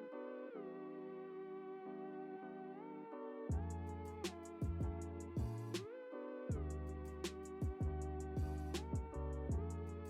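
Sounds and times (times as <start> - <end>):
deep bass: 3.5 - 5.8, 6.5 - 10.0.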